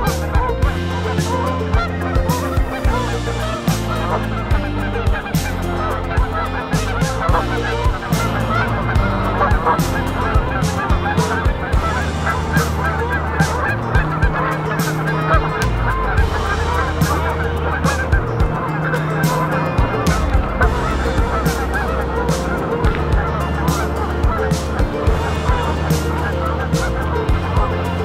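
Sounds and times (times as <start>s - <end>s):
geese honking: 0.0s - 28.0s.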